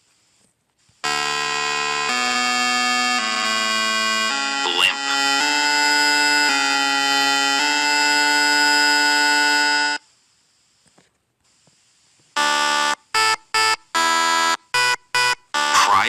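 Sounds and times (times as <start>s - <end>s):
buzzy electronic tone: 1.0s - 10.0s.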